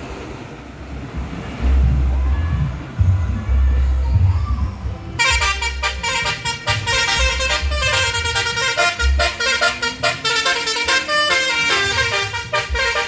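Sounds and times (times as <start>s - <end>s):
low pulsing rumble: 0.0s - 13.0s
multi-tone musical air horn: 5.2s - 13.0s.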